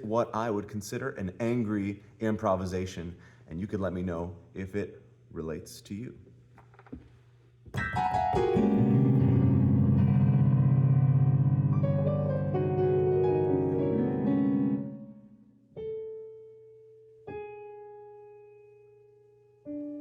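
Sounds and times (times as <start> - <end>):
dissonant piano clusters: 7.8 - 15.4
sparse piano notes ringing: 7.8 - 18.9.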